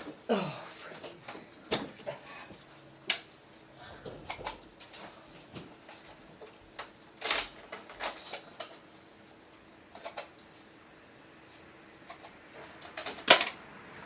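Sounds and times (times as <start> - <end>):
sharp clicks and knocks: 4.0 - 9.0.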